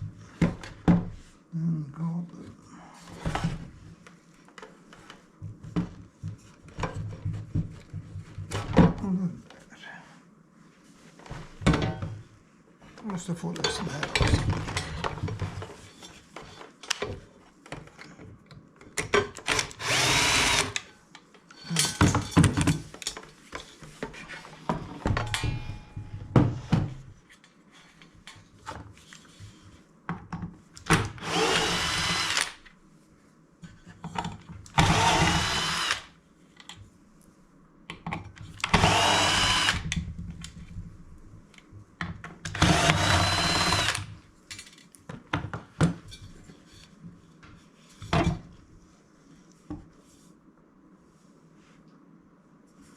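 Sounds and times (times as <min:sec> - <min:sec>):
electric drill whining: 0:19.6 - 0:20.8, 0:31.2 - 0:32.6, 0:34.8 - 0:36.1, 0:38.7 - 0:39.8, 0:42.6 - 0:44.1.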